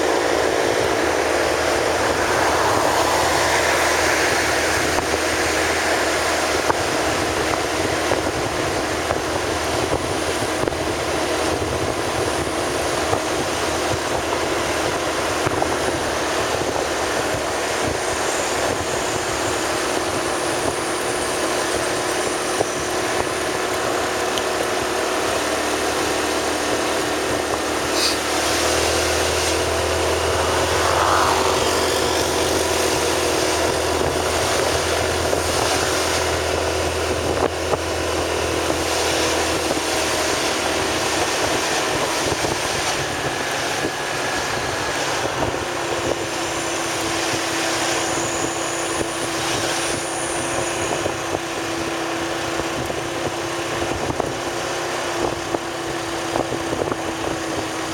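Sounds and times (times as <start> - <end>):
road and wind noise: 0.0 - 57.9
vehicle engine hum: 0.0 - 57.9.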